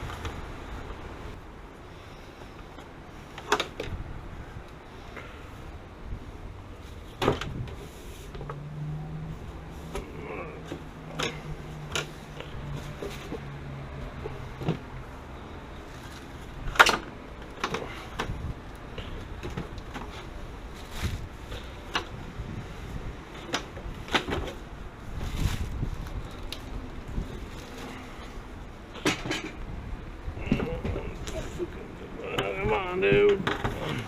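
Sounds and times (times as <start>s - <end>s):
knocks and clunks from tools: 29.0s - 29.6s, 33.1s - 34.0s.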